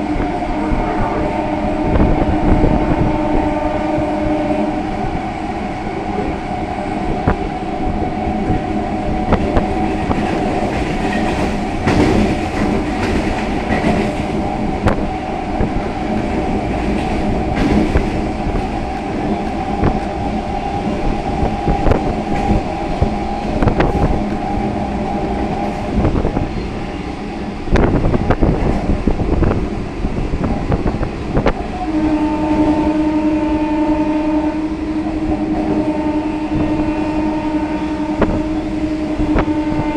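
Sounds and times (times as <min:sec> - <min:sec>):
rush of noise: 0:00.0 - 0:13.1
wheels rumbling: 0:00.0 - 0:34.1
train hum: 0:00.0 - 0:39.9.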